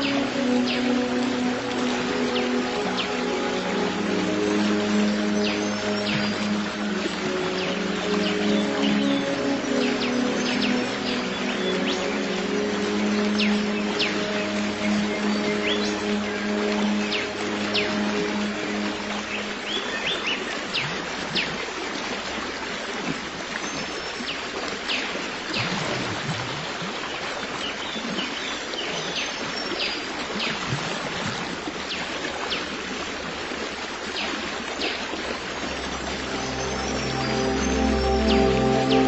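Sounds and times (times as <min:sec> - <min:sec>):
soft background music: 0:00.0 - 0:20.6, 0:35.4 - 0:39.0
stream water running: 0:00.0 - 0:39.0.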